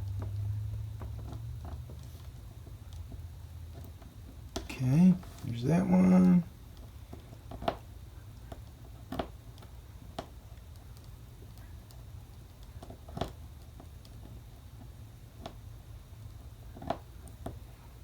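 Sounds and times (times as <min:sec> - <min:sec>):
low steady hum: 0:04.4 - 0:07.1.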